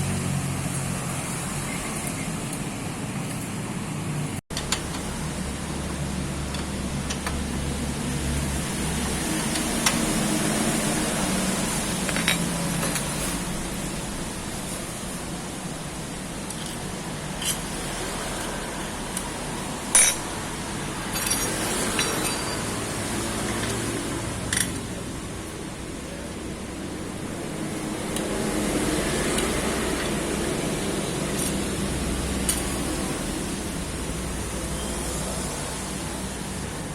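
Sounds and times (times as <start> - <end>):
metal tools clinking: 19.9 - 20.3, 21.1 - 22.8.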